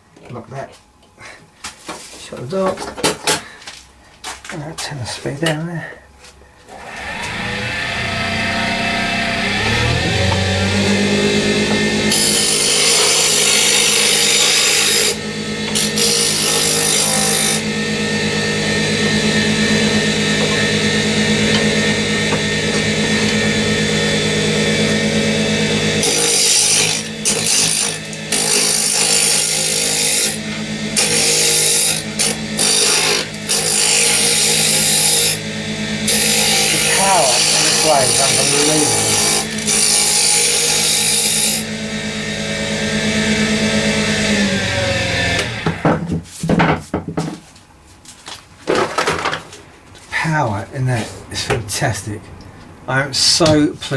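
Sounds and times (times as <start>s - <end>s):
wood lathe humming: 6.6s - 46.1s
turning tool scraping wood: 25.9s - 35.4s, 36.0s - 41.6s.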